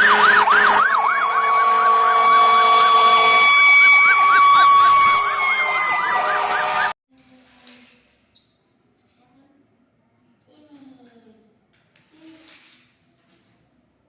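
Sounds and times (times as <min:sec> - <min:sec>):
steady high tone: 0:00.0 - 0:07.0
toy siren wailing: 0:00.0 - 0:07.0.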